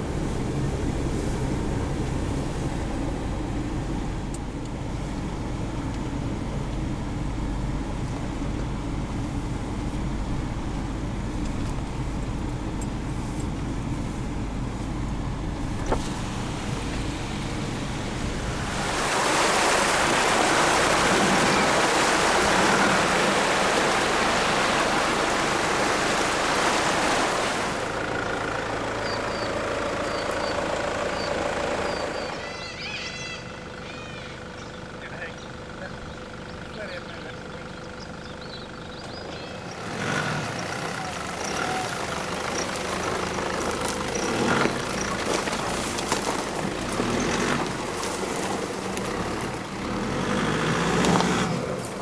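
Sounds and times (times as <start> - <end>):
water rushing: 0.0 - 8.1, 15.6 - 32.6, 39.5 - 52.0
vehicle rumbling on dirt track: 0.0 - 52.0
birds chirping: 15.0 - 52.0.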